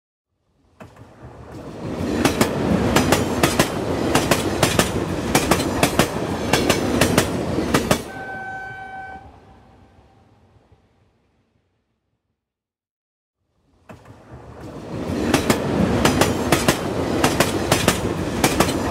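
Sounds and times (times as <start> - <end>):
train wheels clattering over rail joints: 15.1 - 18.9.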